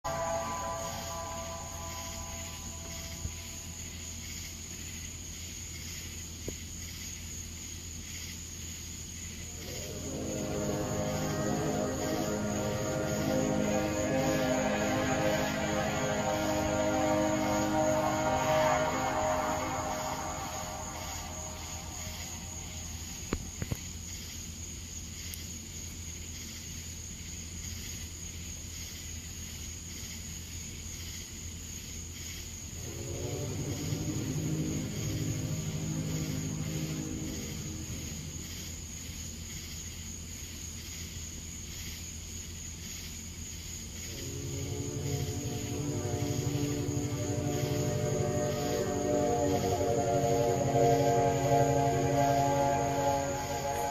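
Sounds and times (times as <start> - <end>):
low droning many-toned sound: 0.0 - 4.3, 9.5 - 23.7, 32.8 - 39.2, 44.0 - 53.9
low hum: 0.0 - 4.4, 9.5 - 23.8, 32.8 - 39.4, 43.9 - 53.9
insects chirring: 0.0 - 53.9.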